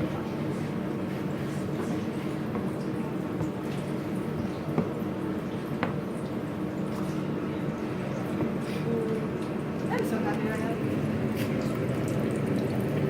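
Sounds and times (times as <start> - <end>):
hot oil sizzling in deep fryer: 9.2 - 13.0.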